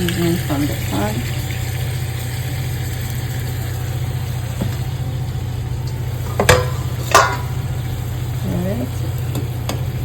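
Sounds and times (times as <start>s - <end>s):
low mechanical hum: 0.0s - 10.0s
sharp metallic clank: 6.3s - 7.6s.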